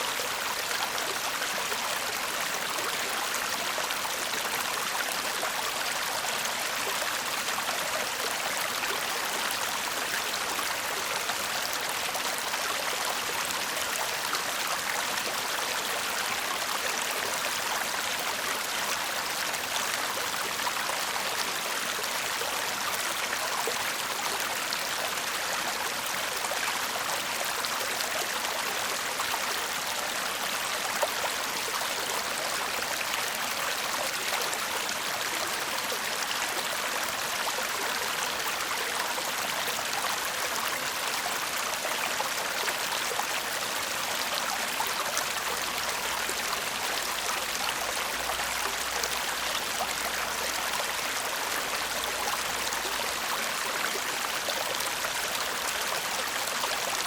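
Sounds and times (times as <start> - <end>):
stream babbling: 0.0 - 57.0.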